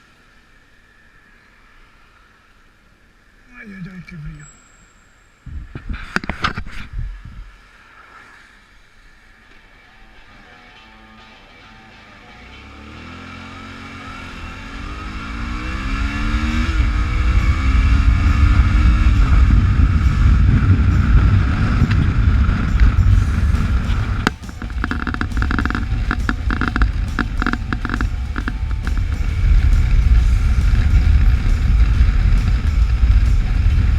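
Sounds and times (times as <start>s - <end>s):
wind rumble on microphone: 5.4s - 9.0s, 14.2s - 33.9s
motorcycle engine accelerating: 10.9s - 33.9s
pulsing sound: 13.0s - 33.9s.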